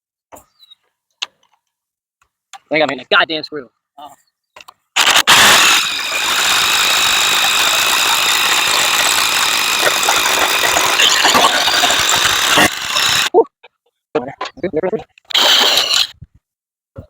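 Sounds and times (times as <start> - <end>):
small motor whining: 5.0 - 13.3, 15.3 - 16.1.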